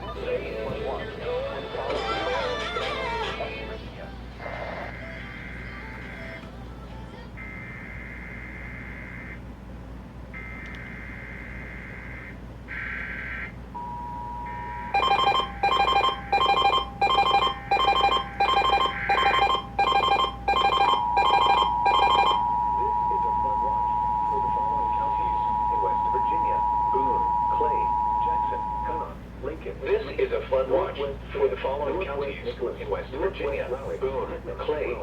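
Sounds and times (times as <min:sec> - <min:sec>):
two-tone attention signal: 0:13.8 - 0:29.1.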